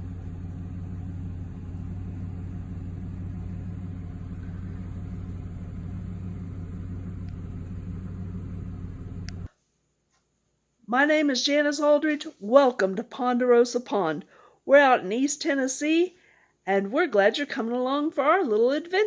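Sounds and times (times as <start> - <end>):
low engine hum: 0.0 - 9.5.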